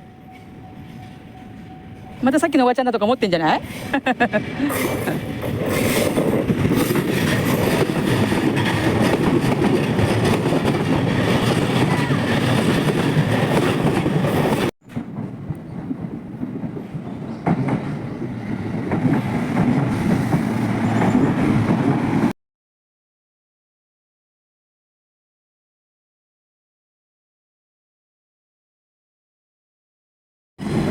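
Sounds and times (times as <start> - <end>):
train rumbling on rails: 0.0 - 22.4, 30.6 - 30.9.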